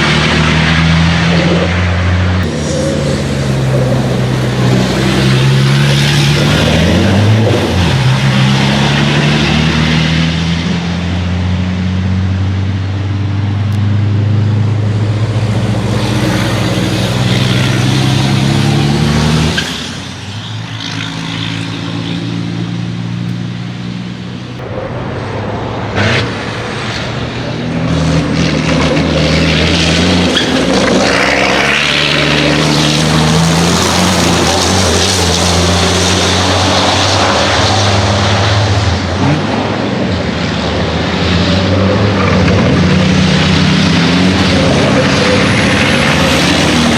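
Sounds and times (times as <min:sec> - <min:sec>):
diesel truck engines racing: 0:00.0 - 0:46.9.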